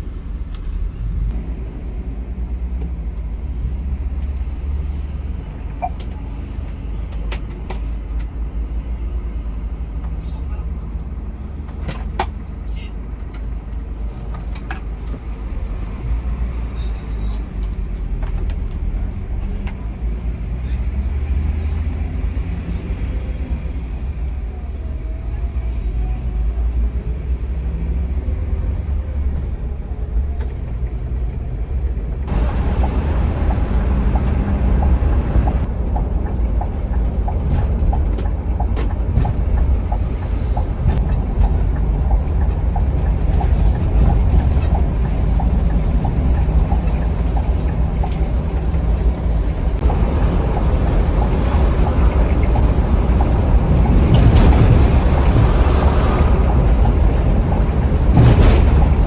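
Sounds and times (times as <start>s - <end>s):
coach engine and road rumble: 0.0s - 59.0s.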